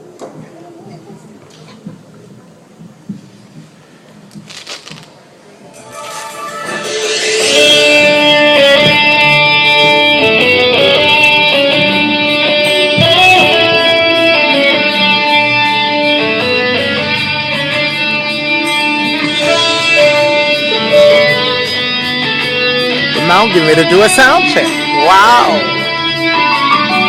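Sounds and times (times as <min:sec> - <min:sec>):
backing track with guitar: 0:06.0 - 0:27.0.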